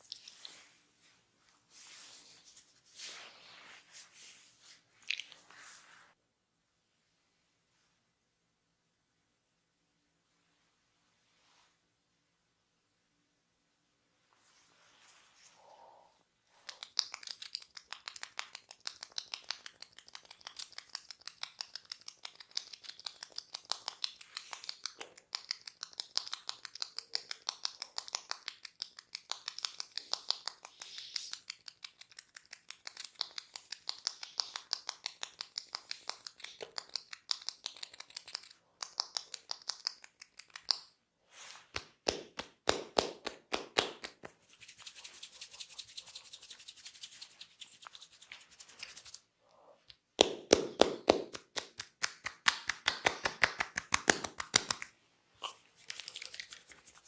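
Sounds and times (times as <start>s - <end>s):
fingers scratching hair: 16.6s - 40.7s, 44.0s - 49.2s, 53.2s - 57.0s.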